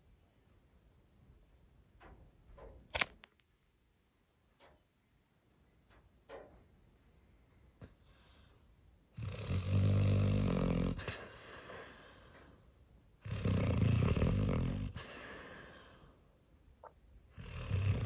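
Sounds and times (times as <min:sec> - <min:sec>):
dog snoring: 0:09.1 - 0:12.0, 0:13.2 - 0:15.4, 0:17.3 - 0:18.0.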